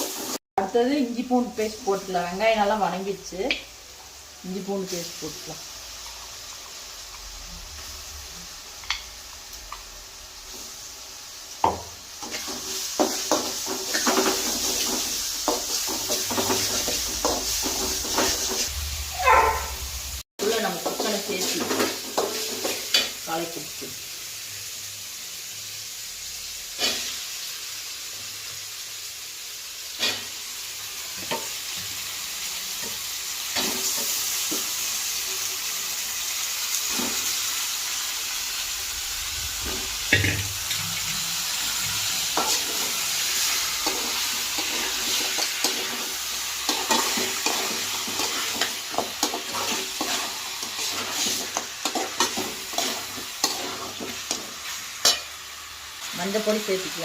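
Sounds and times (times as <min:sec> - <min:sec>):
chicken sizzling in a pan: 0:00.0 - 0:57.0
spoon knocking and scraping pan: 0:11.6 - 0:19.7, 0:20.6 - 0:23.2, 0:39.6 - 0:41.0, 0:41.8 - 0:55.4.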